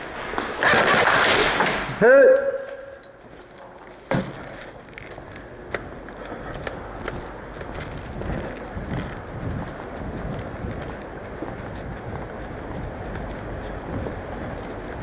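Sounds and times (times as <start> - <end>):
gear rustling against microphone: 3.1 - 15.0.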